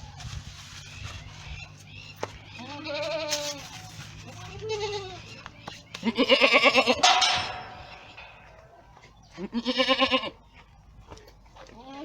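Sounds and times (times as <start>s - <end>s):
goats bleating: 2.5s - 5.4s, 6.0s - 7.2s, 9.3s - 10.4s, 11.6s - 12.0s.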